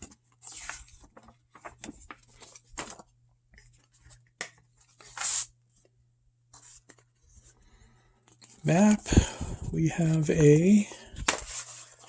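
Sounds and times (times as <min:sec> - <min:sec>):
paper sheets rustling and sliding: 0:00.3 - 0:03.1, 0:04.9 - 0:05.5, 0:08.4 - 0:12.0.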